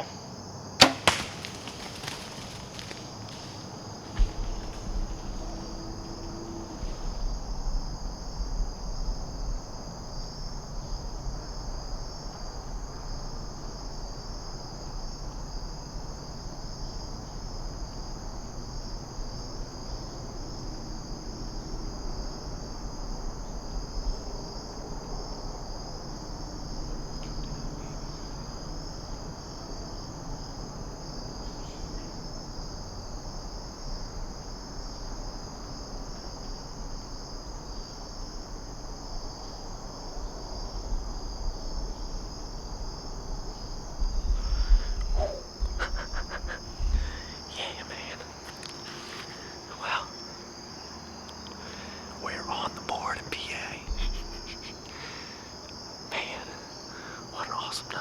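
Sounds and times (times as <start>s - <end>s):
crickets singing: 0.0s - 58.0s
low rumble of wind: 0.0s - 58.0s
sharp knock: 0.8s - 1.6s.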